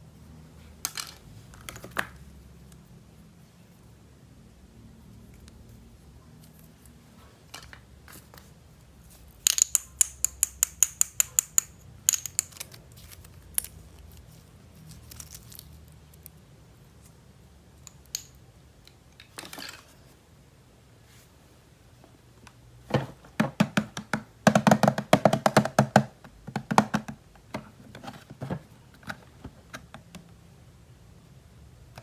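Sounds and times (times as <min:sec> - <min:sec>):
small hard items clicking: 0:09.4 - 0:14.2.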